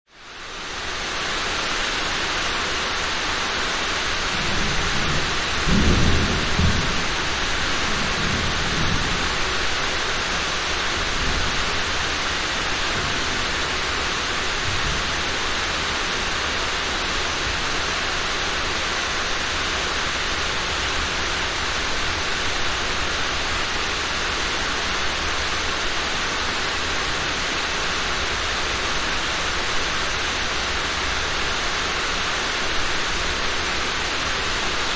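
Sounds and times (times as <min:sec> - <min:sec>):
steady rain hissing: 0:00.1 - 0:34.9
rumble of thunder: 0:04.2 - 0:10.0.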